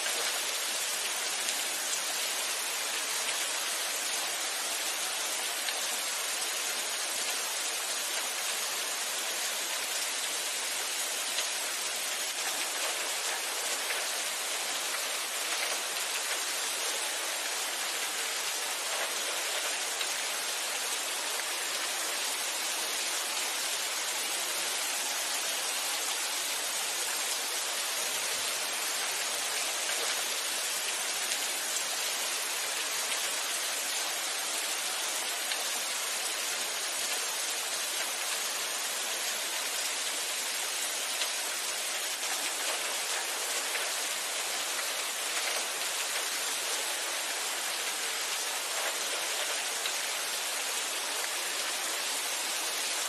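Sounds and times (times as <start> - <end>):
steady rain falling: 0.0 - 53.0.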